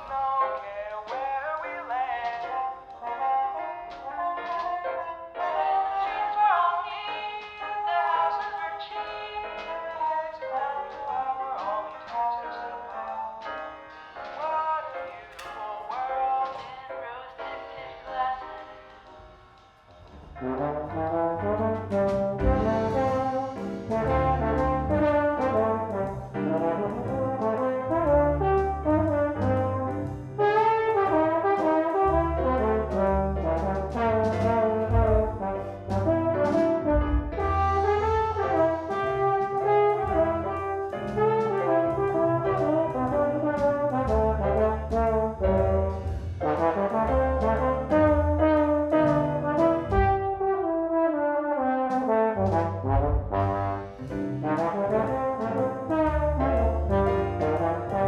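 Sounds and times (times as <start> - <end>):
backing track with bass line: 20.1 - 50.4, 52.4 - 58.0
jazz trombone solo: 20.4 - 58.0.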